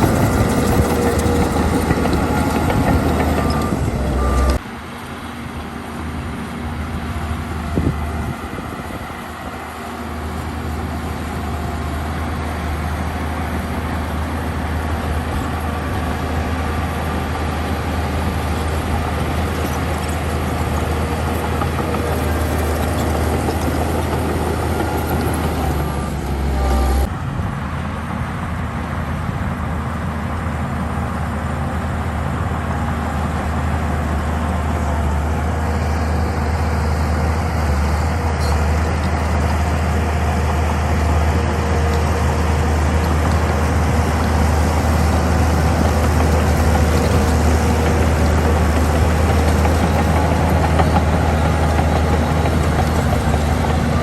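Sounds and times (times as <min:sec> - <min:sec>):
diesel machinery engine drone: 0:00.0 - 0:54.0
short beeps: 0:03.4 - 0:04.6.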